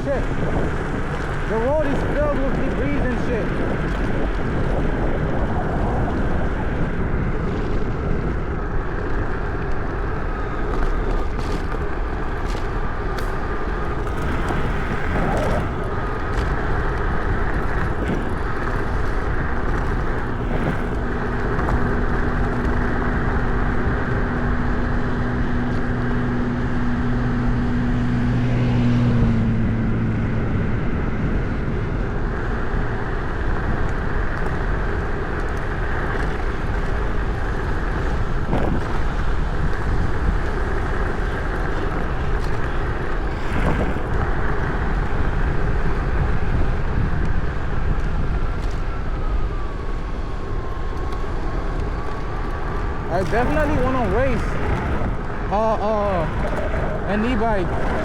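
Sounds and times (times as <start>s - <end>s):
low hum: 0.0s - 58.0s
tyre rumble on rough road: 0.0s - 58.0s
wind rushing: 50.1s - 58.0s.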